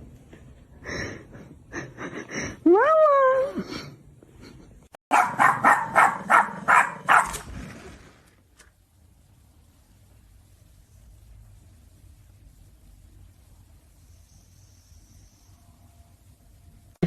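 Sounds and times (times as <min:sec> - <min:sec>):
dog barking: 0:05.1 - 0:07.5.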